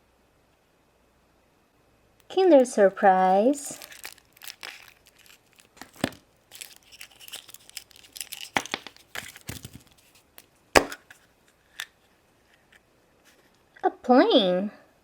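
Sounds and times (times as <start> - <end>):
foil wrapper tearing and crinkling: 3.2 - 11.0.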